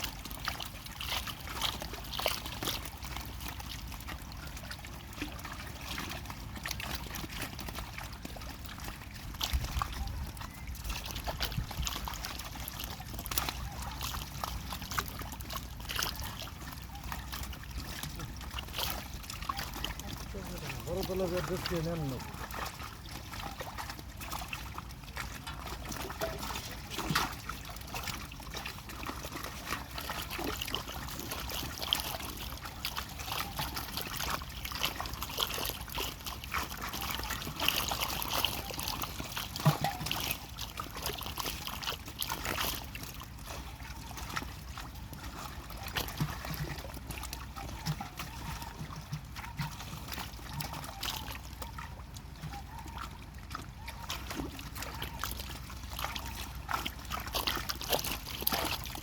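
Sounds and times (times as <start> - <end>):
water trickling and splashing: 0.0 - 59.0.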